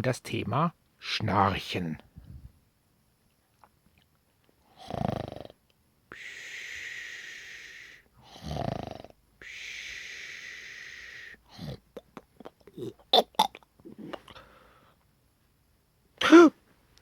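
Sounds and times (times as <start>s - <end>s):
person snoring: 4.7s - 5.5s, 6.1s - 11.8s.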